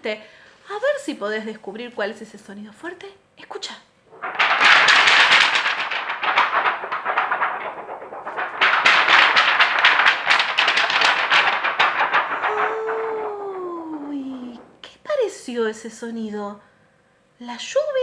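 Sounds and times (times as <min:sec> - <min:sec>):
film sheet rattling like thunder: 0:04.1 - 0:15.8.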